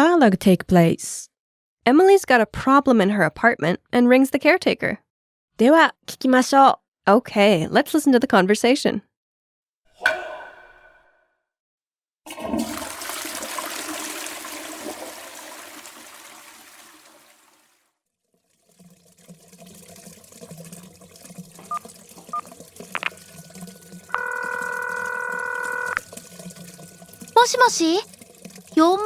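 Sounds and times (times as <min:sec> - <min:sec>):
toilet flushing: 0:12.3 - 0:29.0
telephone ringing tone: 0:22.3 - 0:28.0.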